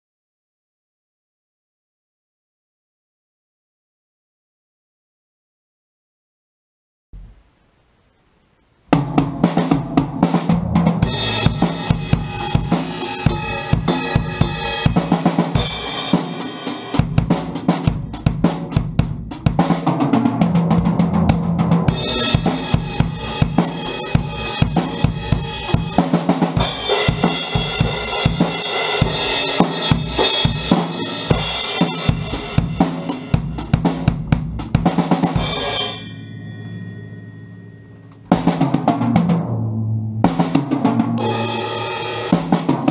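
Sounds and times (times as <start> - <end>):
drum kit playing steady beat: 8.9 - 36.3, 38.1 - 39.6, 40.2 - 42.9
cymbal ringing: 11.0 - 17.0, 21.9 - 33.3, 35.3 - 38.9, 41.2 - 42.3.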